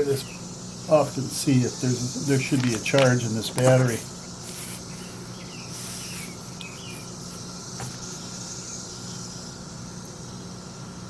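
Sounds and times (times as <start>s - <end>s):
high hiss: 0.0s - 11.0s
steady background hum: 0.0s - 11.0s
faint chirps: 3.7s - 10.2s.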